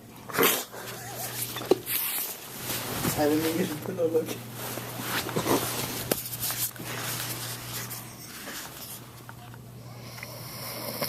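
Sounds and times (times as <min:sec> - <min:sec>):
rustling and handling noise: 0:00.8 - 0:09.7
dog snoring: 0:09.8 - 0:11.0.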